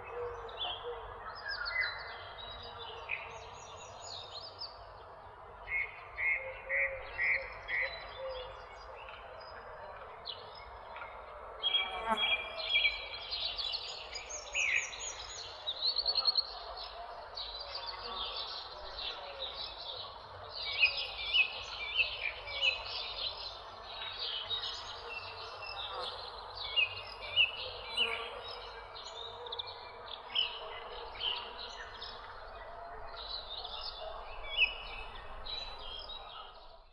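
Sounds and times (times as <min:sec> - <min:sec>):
small birds chirping and trilling: 0:17.4 - 0:36.8.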